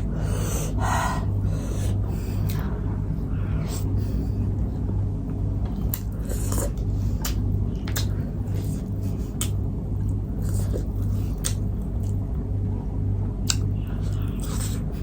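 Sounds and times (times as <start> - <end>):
steady low hum: 0.0 - 15.0
wet chewing and mouth smacks: 5.3 - 12.2, 13.4 - 15.0.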